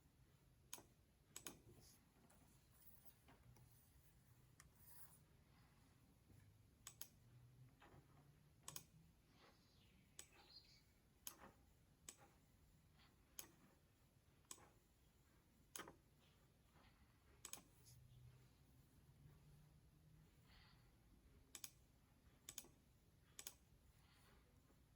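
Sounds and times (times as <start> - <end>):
computer mouse clicks: 0.7 - 5.2, 6.8 - 12.4, 13.3 - 13.7, 15.7 - 16.0, 17.4 - 18.0, 21.5 - 21.8, 22.4 - 23.7.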